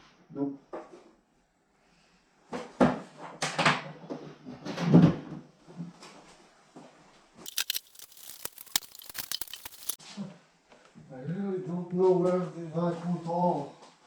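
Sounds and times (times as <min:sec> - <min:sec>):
scraping handling noises: 0:07.5 - 0:10.0
small hard objects clicking and rattling: 0:07.5 - 0:10.0.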